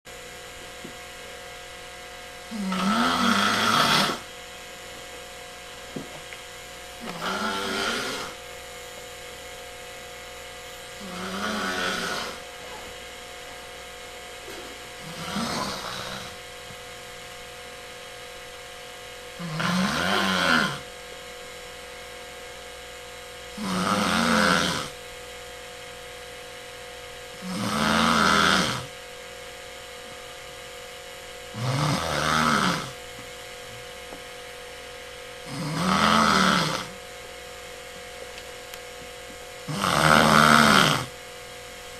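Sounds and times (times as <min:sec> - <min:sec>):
person snoring loudly: 0:02.5 - 0:04.3, 0:07.0 - 0:08.4, 0:11.0 - 0:12.5, 0:15.0 - 0:16.4, 0:19.4 - 0:20.9, 0:23.5 - 0:25.0, 0:27.4 - 0:28.9, 0:31.5 - 0:33.0, 0:35.4 - 0:37.0, 0:39.7 - 0:41.2.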